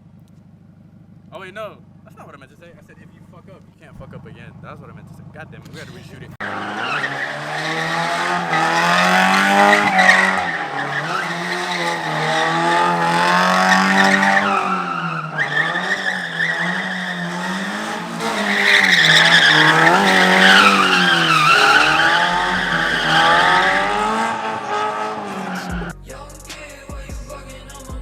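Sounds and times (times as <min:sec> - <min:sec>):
car engine revving: 0:00.0 - 0:26.8
tyres squealing: 0:05.6 - 0:25.9.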